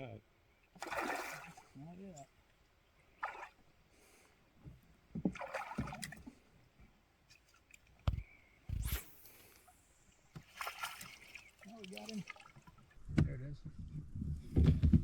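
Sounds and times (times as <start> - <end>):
water splashing beside canoe: 0.6 - 13.0
dull knocks on canoe: 4.6 - 6.3.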